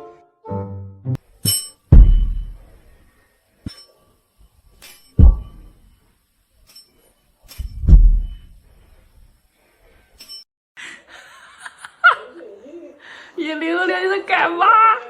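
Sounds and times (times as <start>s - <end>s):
sharp knocks and clinks: 1.4s - 2.7s, 3.7s - 4.0s, 4.8s - 5.8s, 10.2s - 10.4s
heavy booming thuds: 1.9s - 2.6s, 5.2s - 5.7s, 7.7s - 8.5s.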